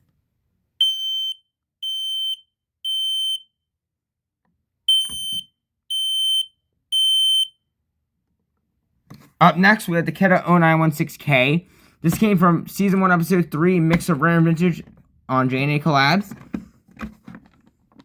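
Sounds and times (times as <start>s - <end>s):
smoke alarm beeping: 0.8s - 3.5s, 4.9s - 7.6s.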